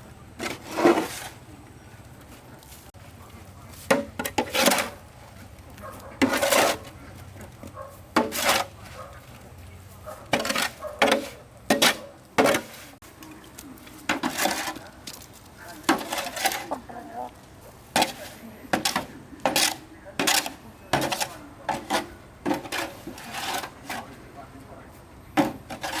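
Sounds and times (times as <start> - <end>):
short noisy scrapes: 0.4 - 1.4.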